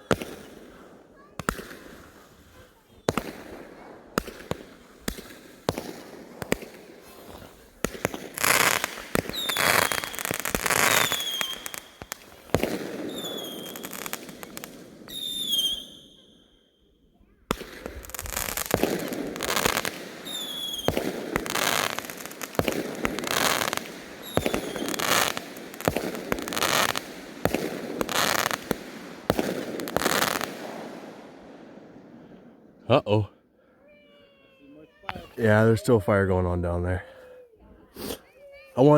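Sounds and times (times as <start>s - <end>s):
firework bangs and crackling: 0.0s - 16.5s, 17.2s - 33.3s
falling firework whistles: 7.9s - 16.7s, 18.0s - 31.3s.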